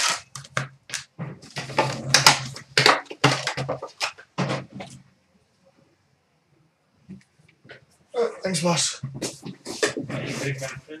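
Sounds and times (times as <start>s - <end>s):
packaging crinkling and tearing: 0.0s - 4.2s.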